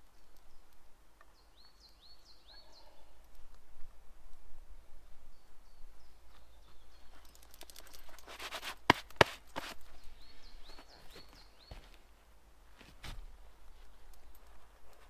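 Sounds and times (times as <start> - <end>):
rustling and clattering: 7.2 - 15.0
small bird chirping: 9.5 - 12.1.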